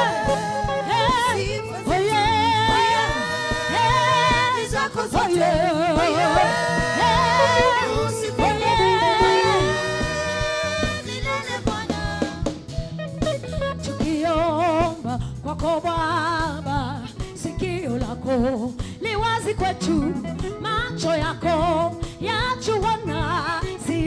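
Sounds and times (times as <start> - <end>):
singers holding long notes: 0.0 - 12.8
band with steady bass line: 0.0 - 24.0.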